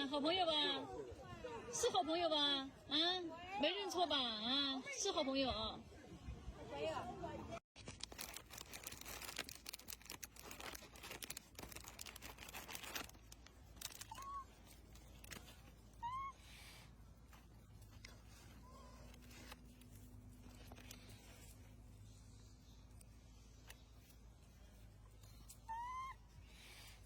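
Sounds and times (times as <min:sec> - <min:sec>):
crackling rustling noise: 0:07.8 - 0:27.0
macaque coo calls: 0:25.6 - 0:26.2.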